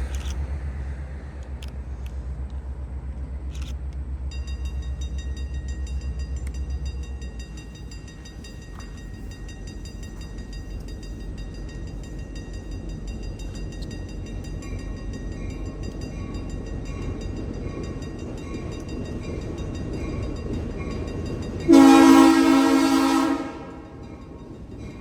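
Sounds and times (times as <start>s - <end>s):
train rumbling: 0.0s - 25.0s
faint regular clicking: 1.4s - 4.0s
locomotive horn blast: 21.7s - 24.0s.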